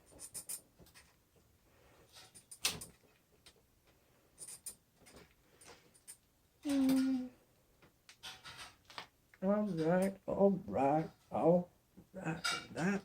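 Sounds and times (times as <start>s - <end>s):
small parts clicking and tapping: 2.1s - 3.6s, 4.4s - 7.1s
person humming: 6.6s - 7.4s, 9.4s - 13.0s.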